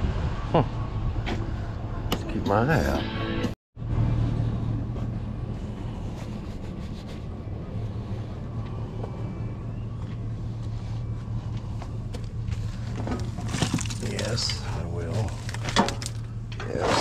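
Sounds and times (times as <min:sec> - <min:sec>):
low mechanical hum: 0:03.8 - 0:17.0.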